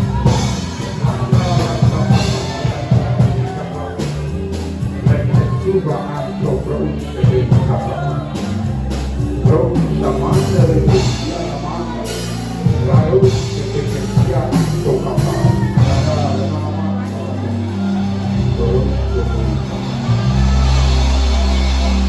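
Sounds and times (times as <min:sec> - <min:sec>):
bass: 0:00.0 - 0:22.0
drum kit: 0:00.0 - 0:22.0
people singing: 0:00.0 - 0:22.0.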